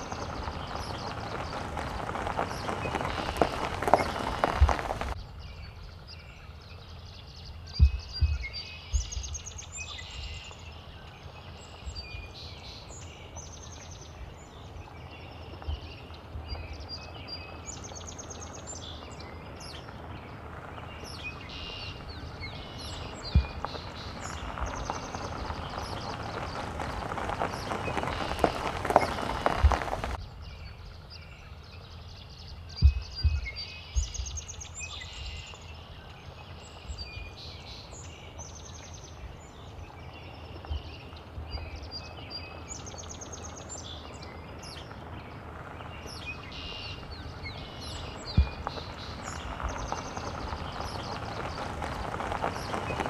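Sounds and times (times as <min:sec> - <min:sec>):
small birds chirping: 0:00.0 - 0:53.0
low thumps: 0:07.8 - 0:08.4, 0:23.2 - 0:30.2, 0:32.8 - 0:34.3.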